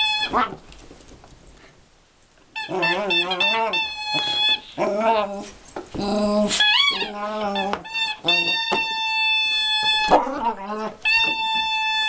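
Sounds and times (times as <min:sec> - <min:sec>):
rubber squeaky toy squeaking: 0:00.0 - 0:00.6, 0:02.6 - 0:05.2, 0:06.4 - 0:12.0.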